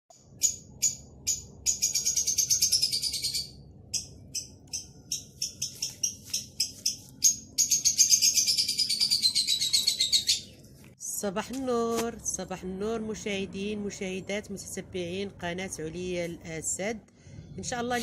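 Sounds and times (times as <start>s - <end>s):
bird chirps: 0.2s - 10.7s
songbird trilling: 0.3s - 10.6s.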